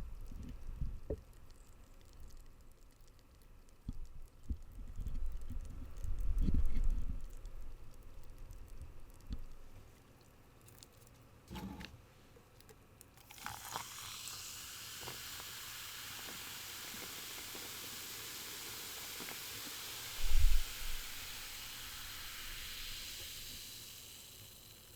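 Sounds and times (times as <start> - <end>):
soda fizzing: 13.2 - 24.9.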